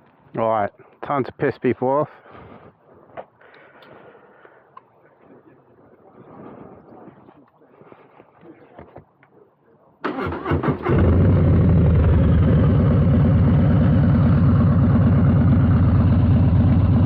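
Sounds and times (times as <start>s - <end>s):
motorcycle engine idling: 11.5s - 17.0s.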